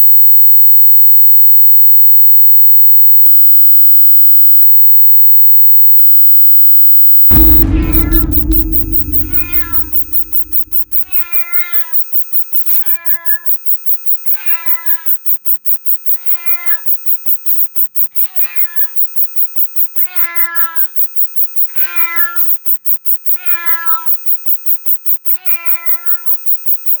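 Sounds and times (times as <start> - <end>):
high-pitched warbling electronic tone: 7.3 - 11.1
cat meowing: 20.0 - 20.9, 21.8 - 22.5, 23.4 - 24.1, 25.4 - 26.2.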